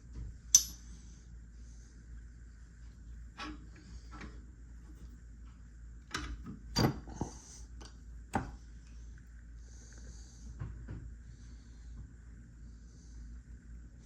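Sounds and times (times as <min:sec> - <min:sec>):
metal parts clicking and knocking: 0:00.6 - 0:00.8.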